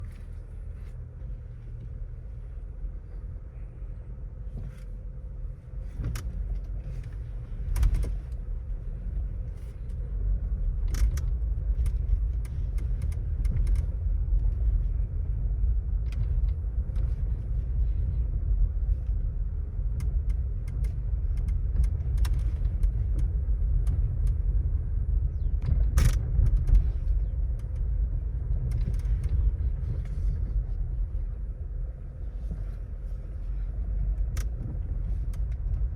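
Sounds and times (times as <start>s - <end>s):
low road rumble: 0.0s - 35.9s.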